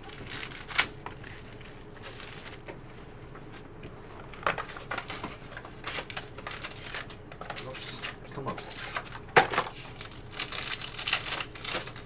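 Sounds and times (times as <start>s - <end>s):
card packaging crinkling and clicking: 0.0s - 3.6s, 4.2s - 12.0s.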